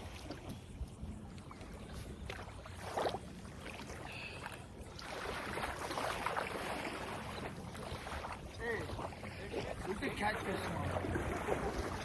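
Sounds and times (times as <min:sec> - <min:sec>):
water: 0:00.0 - 0:12.0
wind: 0:00.0 - 0:12.0.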